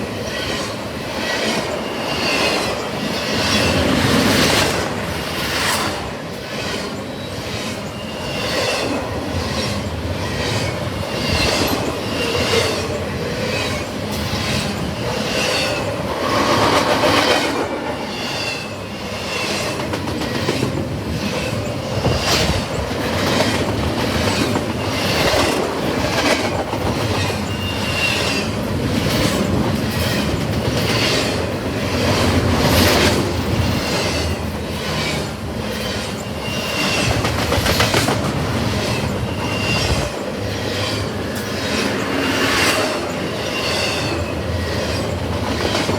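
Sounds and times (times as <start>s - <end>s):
freight train rumble: 0.0s - 45.9s
train wheels clicking on rail joints: 0.0s - 45.9s
wheel squeals: 27.2s - 28.6s, 35.0s - 37.8s, 38.7s - 45.2s.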